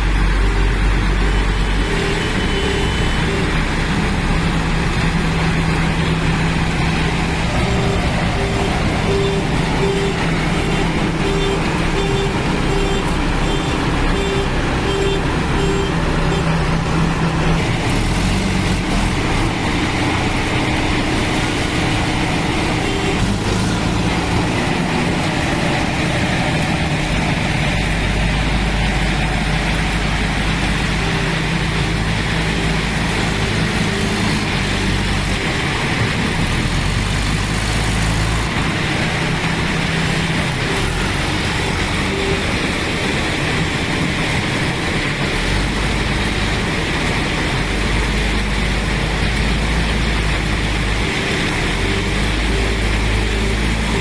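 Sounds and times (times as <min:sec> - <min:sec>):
diesel engine running hard: 0:00.0 - 0:54.0.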